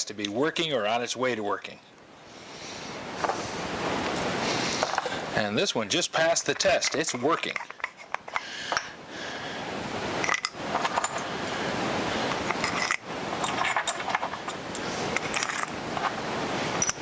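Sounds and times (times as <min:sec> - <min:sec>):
hand brace boring into wood: 0:10.2 - 0:17.0.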